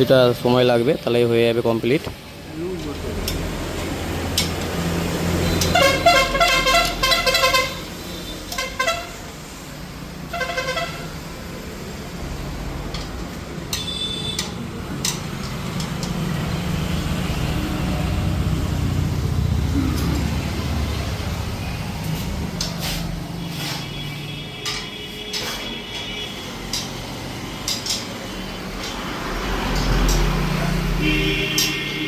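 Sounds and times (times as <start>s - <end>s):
vehicle engines running: 0.0s - 32.0s
vehicle horn honking: 5.4s - 9.3s, 10.3s - 11.2s, 13.7s - 14.6s, 23.4s - 26.7s, 30.8s - 32.0s.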